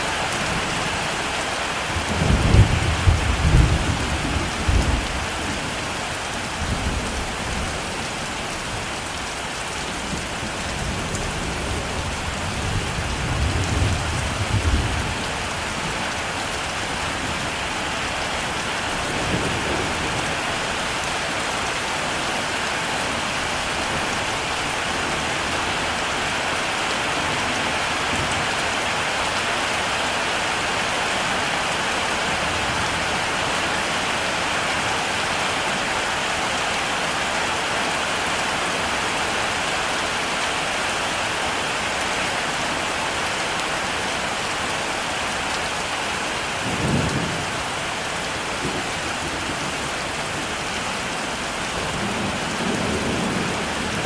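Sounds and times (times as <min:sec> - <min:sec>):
heavy rain falling: 0:00.0 - 0:54.0
low rolling thunder: 0:02.0 - 0:05.7.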